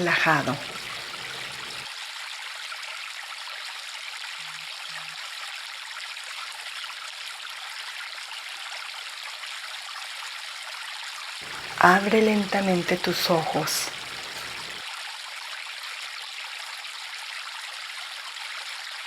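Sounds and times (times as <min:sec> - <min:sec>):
river water flowing: 0:00.0 - 0:01.9, 0:11.4 - 0:14.8.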